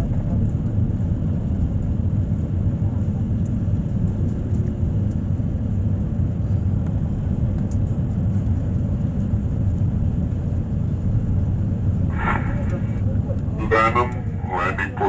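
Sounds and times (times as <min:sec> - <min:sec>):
airliner cabin rumble: 0:00.0 - 0:15.0.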